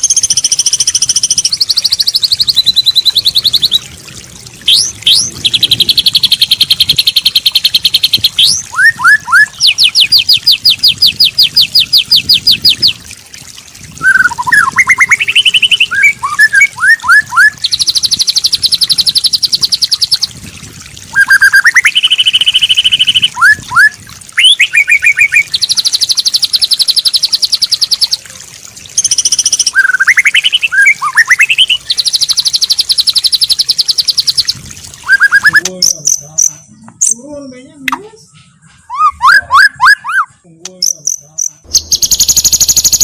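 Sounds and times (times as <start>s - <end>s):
bird singing whistles and trills: 0.0s - 3.9s, 4.7s - 13.0s, 14.0s - 20.3s, 21.1s - 28.2s, 29.0s - 35.7s, 36.4s - 41.0s, 41.7s - 43.0s.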